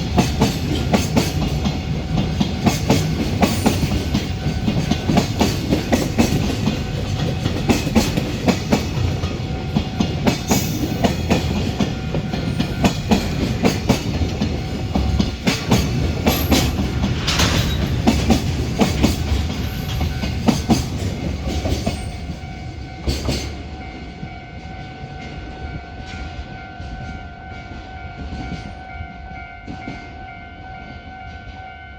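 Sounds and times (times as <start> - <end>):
train wheels clattering over rails: 0.0 - 24.3
heavy train rumble: 0.0 - 31.9.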